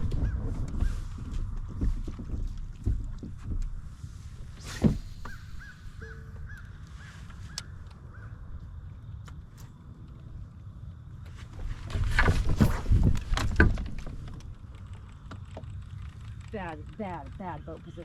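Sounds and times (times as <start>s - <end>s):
wind rumble on microphone: 0.0s - 16.8s
bird calling in clipped notes: 4.7s - 8.4s.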